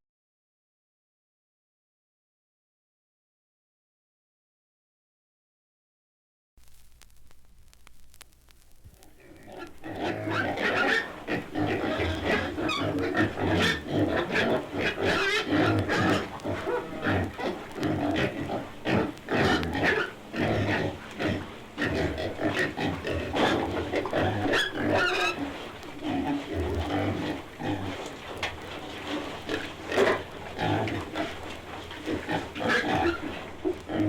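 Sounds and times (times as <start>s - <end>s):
animal calls overlapping: 9.0s - 34.0s.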